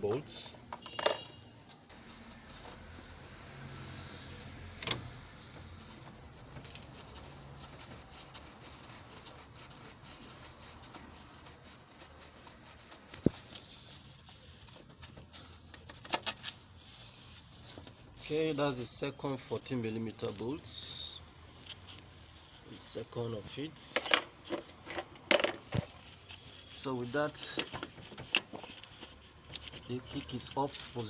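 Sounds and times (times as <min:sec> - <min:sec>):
hand tools handling sounds: 0:23.8 - 0:26.4.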